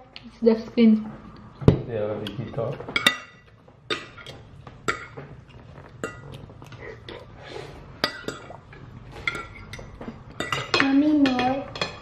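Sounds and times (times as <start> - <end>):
cutlery clinking on plates: 2.3 - 5.4, 8.0 - 12.0.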